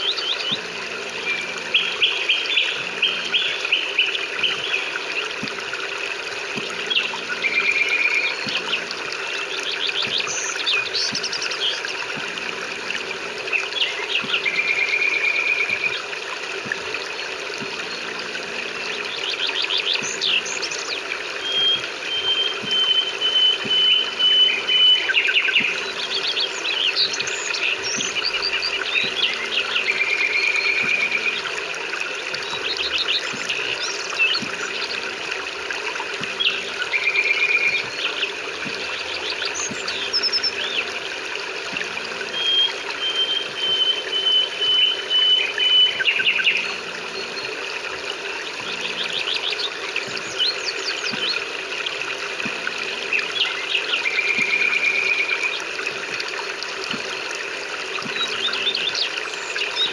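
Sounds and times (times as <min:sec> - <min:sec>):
birds chirping and trilling: 0:00.0 - 0:05.6, 0:06.4 - 0:12.4, 0:17.0 - 0:31.7, 0:32.3 - 0:41.1, 0:42.2 - 0:47.8, 0:48.5 - 0:51.6, 0:58.0 - 0:59.9
rain hiss: 0:00.0 - 0:22.1.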